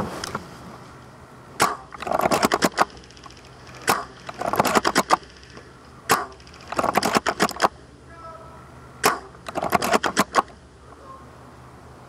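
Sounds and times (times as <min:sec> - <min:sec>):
rattle of clicks: 0:01.6 - 0:07.8, 0:09.0 - 0:10.6
airsoft gun snaps: 0:03.8 - 0:05.2, 0:06.1 - 0:07.8.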